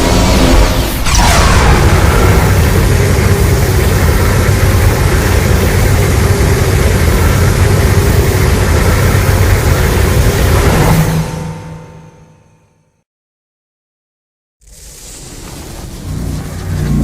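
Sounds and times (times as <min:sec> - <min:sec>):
low continuous rumbling roar: 0:01.1 - 0:11.5, 0:15.4 - 0:17.0.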